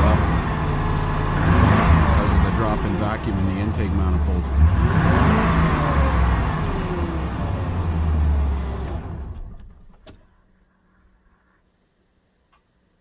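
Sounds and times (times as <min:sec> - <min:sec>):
truck engine revving down: 0:00.0 - 0:10.0.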